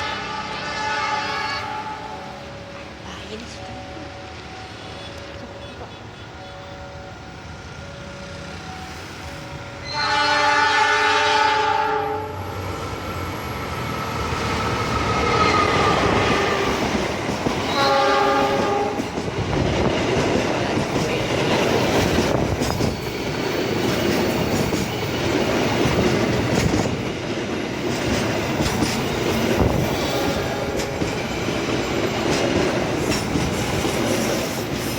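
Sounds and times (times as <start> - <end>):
train horn blowing: 0.0 - 2.4, 9.8 - 12.5, 15.3 - 16.8, 17.7 - 19.1
train wheels clattering over rails: 12.6 - 34.9.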